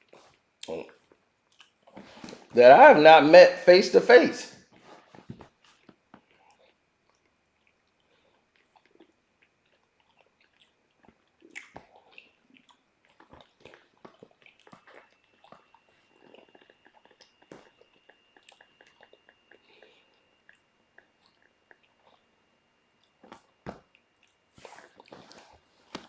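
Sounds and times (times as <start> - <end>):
person chewing candy: 0.0 - 2.0, 5.5 - 26.0
mouth smacks: 6.2 - 22.3.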